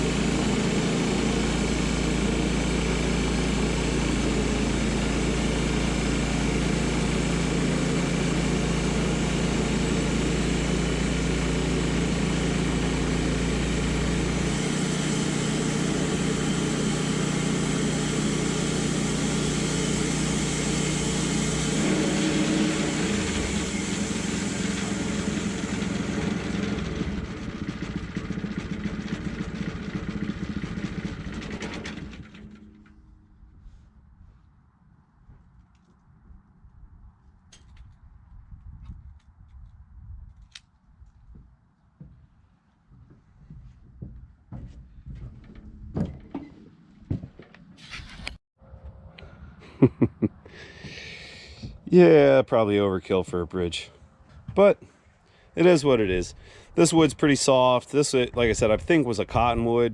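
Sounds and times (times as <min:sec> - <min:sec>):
sawmill engine running: 0:00.0 - 0:33.8, 0:50.5 - 0:59.9.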